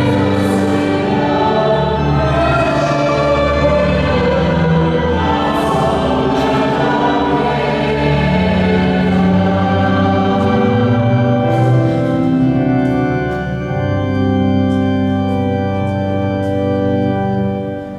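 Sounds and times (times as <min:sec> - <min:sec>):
choir singing: 0:00.0 - 0:12.7
church organ: 0:00.0 - 0:17.9.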